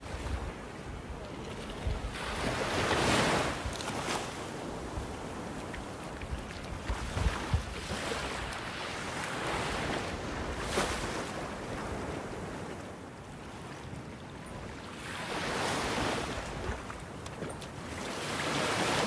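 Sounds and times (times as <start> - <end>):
sea waves washing onto shore: 0.0 - 13.0, 14.7 - 19.0
wind on microphone: 0.0 - 13.0.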